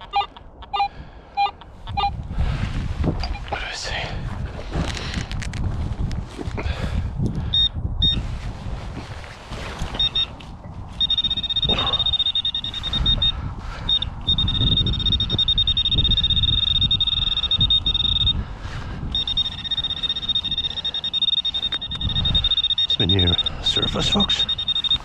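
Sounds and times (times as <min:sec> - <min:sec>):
rumbling handling noise: 0:02.3 - 0:07.0
metal detector high-pitched tone: 0:11.0 - 0:18.4, 0:19.1 - 0:25.0.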